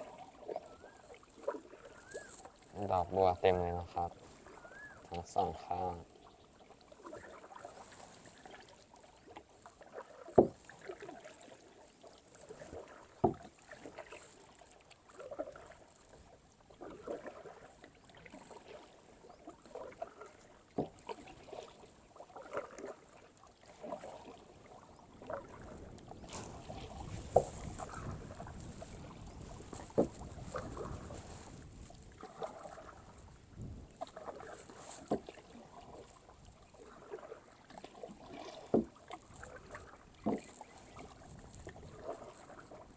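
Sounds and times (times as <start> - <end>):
paddle strokes swishing through water: 0.0 - 42.9.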